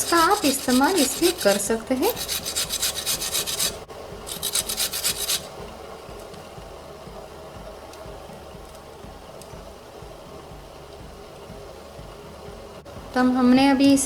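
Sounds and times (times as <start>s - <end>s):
root rasping on a hand grater: 0.0s - 5.5s.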